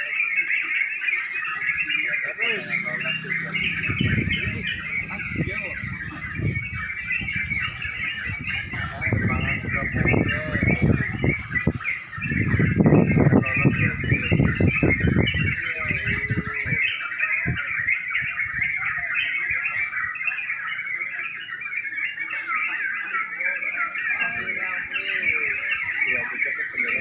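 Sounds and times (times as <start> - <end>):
birds chattering and chirping: 0.0 - 27.0
loud low clattering: 2.6 - 9.0.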